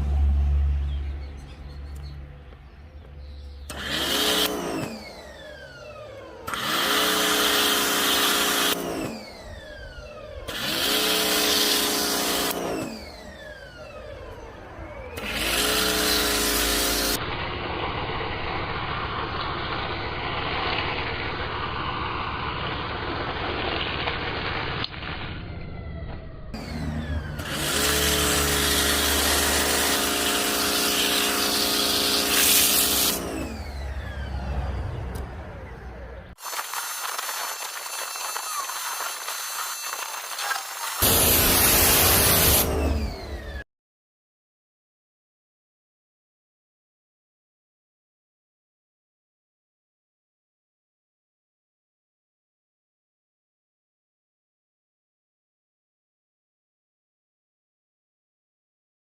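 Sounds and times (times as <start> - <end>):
pressure washer motor whining: 3.1 - 43.6.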